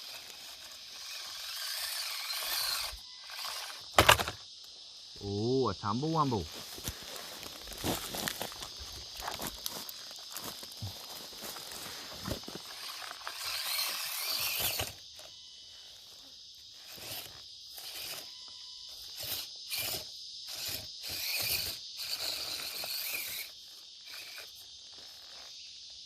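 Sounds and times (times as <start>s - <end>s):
scraping and crunching: 0.0s - 4.4s, 6.5s - 15.4s
insects chirping: 0.0s - 26.0s.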